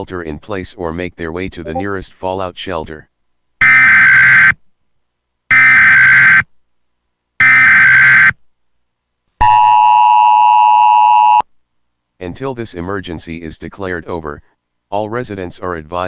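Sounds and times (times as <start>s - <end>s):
two-tone alert signal: 1.6s - 1.9s
harsh buzzing bursts: 3.6s - 4.6s, 5.5s - 6.4s, 7.4s - 8.3s.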